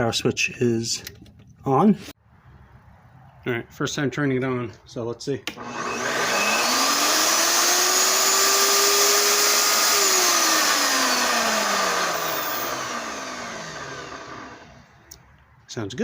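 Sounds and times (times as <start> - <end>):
router motor whining: 5.5 - 15.0.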